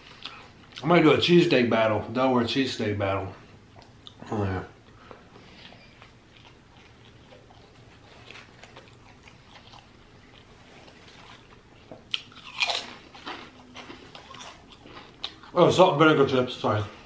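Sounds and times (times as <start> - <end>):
person chewing food: 0.0 - 0.8, 3.6 - 15.6
crunching chip bites: 11.2 - 15.5.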